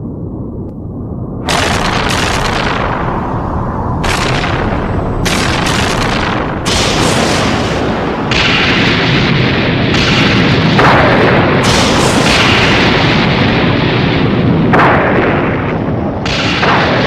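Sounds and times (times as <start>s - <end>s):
dense designed rumble: 0.0s - 10.8s
falling sweep: 1.4s - 9.6s
booming crashes: 1.4s - 17.0s.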